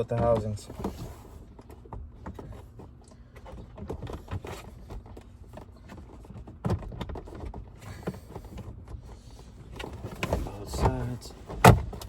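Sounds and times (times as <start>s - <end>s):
plastic glove box clicks and knocks: 9.8s - 12.0s.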